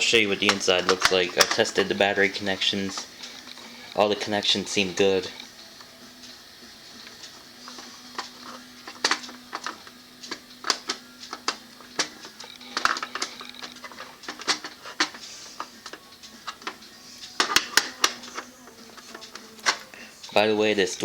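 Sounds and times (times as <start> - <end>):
plastic toy clicking and knocking: 0.0 - 3.6, 7.0 - 20.0
faint steady hum: 0.0 - 21.0.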